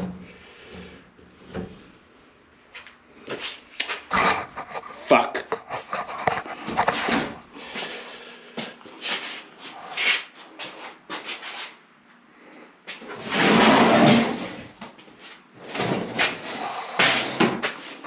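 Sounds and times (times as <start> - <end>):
metal parts scraping and knocking: 3.4 - 4.8.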